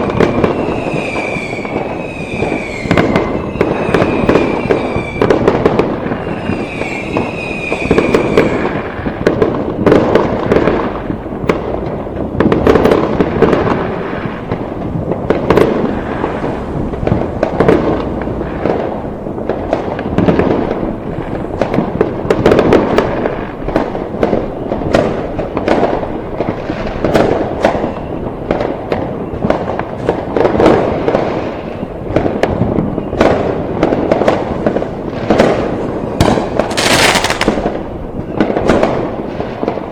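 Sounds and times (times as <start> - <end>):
high firework whistle: 0.0 - 8.9, 15.4 - 20.0, 27.0 - 32.2, 32.8 - 33.6, 35.5 - 39.0
fireworks bangs and crackling: 0.0 - 39.9.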